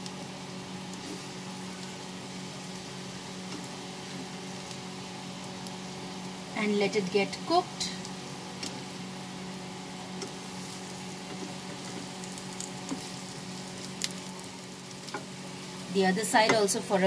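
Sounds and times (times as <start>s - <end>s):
bread deep-frying in hot oil: 0.0s - 17.0s.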